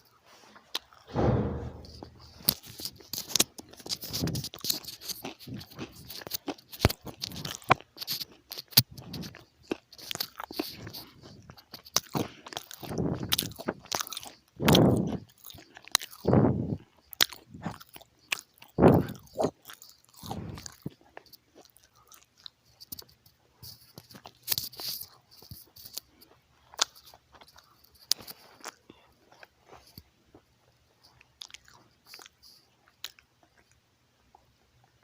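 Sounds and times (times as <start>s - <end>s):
chewing crunchy food: 0.0s - 1.1s, 2.0s - 35.0s.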